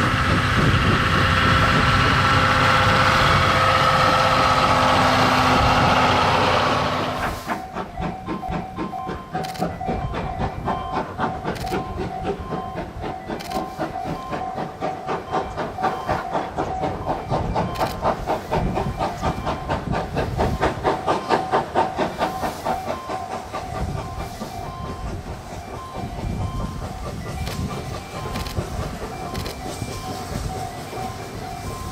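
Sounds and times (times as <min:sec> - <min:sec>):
steam hissing: 0:00.0 - 0:31.9
steam locomotive exhaust beats: 0:00.0 - 0:31.9.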